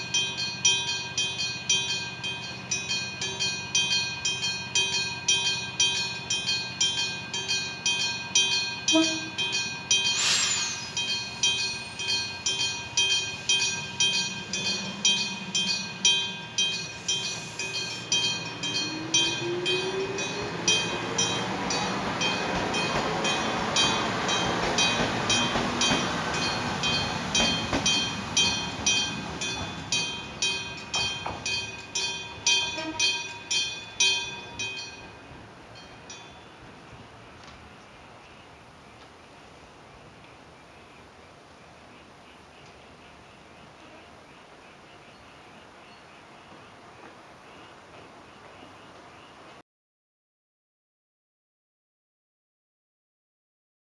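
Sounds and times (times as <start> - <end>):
level-crossing bell ringing: 0.0 - 35.2
train wheels rumbling: 0.0 - 40.5.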